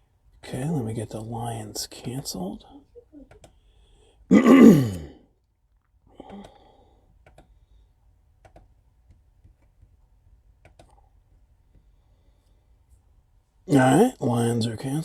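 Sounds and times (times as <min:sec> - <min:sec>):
mouse and keyboard clicks: 0:07.2 - 0:07.6, 0:08.4 - 0:10.0, 0:10.6 - 0:11.0.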